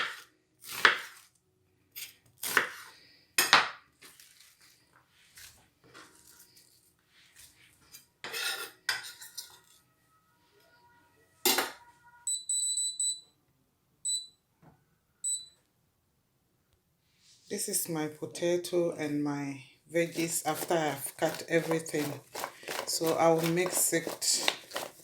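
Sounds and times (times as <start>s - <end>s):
dishes clattering on a counter: 8.2s - 9.6s, 11.5s - 11.8s.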